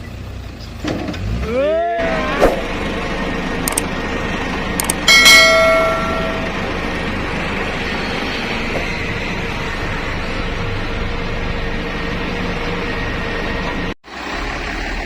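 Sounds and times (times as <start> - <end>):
sharp clicks: 3.7 - 3.9, 4.8 - 5.0
bell ding: 5.1 - 6.6.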